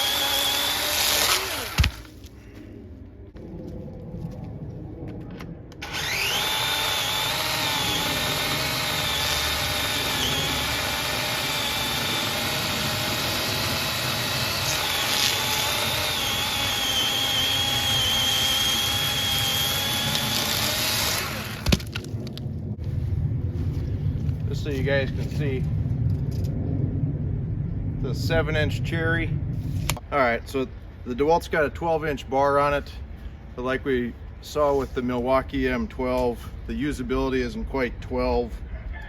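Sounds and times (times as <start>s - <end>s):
electric chainsaw cutting log: 0.0s - 2.1s, 5.8s - 22.0s.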